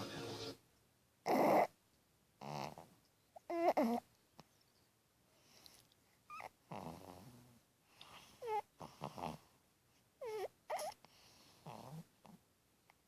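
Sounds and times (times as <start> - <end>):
cat snoring with squeaky whistle: 1.3 - 1.7, 2.4 - 2.8, 3.5 - 4.0, 6.3 - 7.6, 8.2 - 9.5, 10.2 - 11.0, 11.6 - 12.4.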